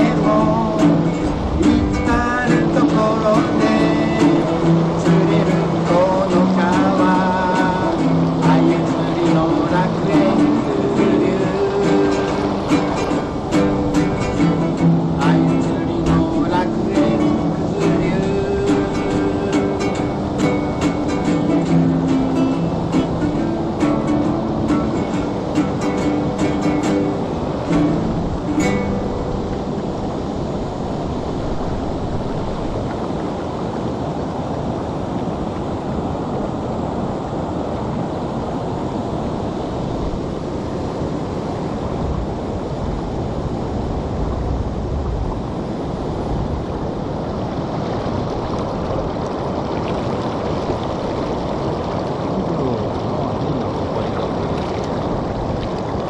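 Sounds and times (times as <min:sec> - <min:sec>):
plucked guitar music: 0:00.0 - 0:30.6
river water rushing: 0:00.0 - 0:56.0.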